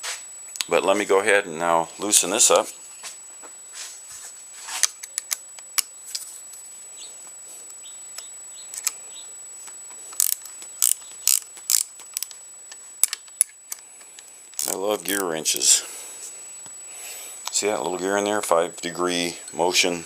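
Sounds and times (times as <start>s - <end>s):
ratchet wrench clicking: 10.2s - 12.4s, 13.0s - 13.8s, 14.6s - 15.3s.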